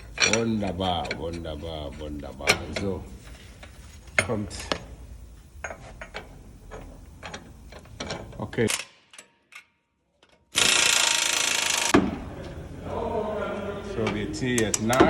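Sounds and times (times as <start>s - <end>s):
ratchet clicking: 6.0s - 12.0s
loud power tool running: 10.6s - 12.0s.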